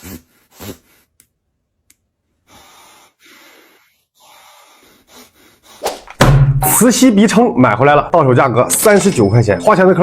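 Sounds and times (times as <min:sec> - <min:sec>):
person breathing hard through nose: 0:02.4 - 0:05.9.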